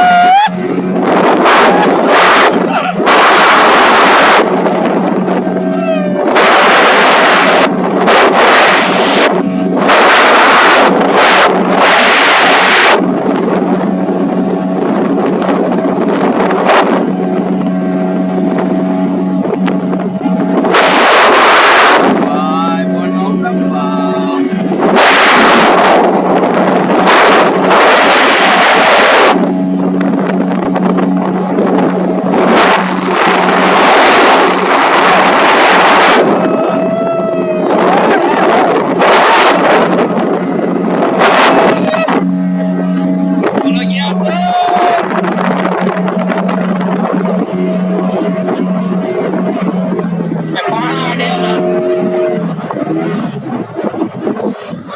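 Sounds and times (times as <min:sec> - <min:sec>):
motorboat engine running: 0:00.0 - 0:54.9
wind and water rushing: 0:00.0 - 0:54.9
loud rushing noise: 0:31.1 - 0:43.7
held high tone: 0:36.0 - 0:42.4.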